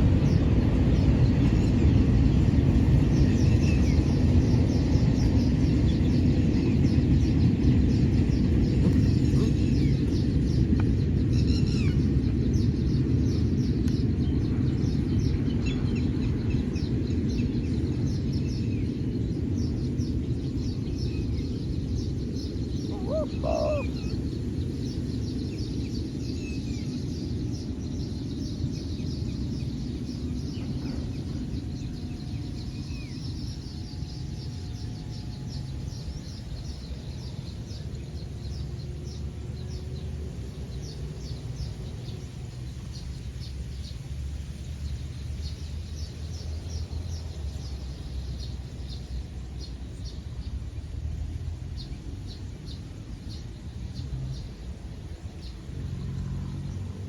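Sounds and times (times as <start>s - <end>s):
steady low rumble: 0.0s - 57.0s
short bird calls: 22.7s - 24.2s.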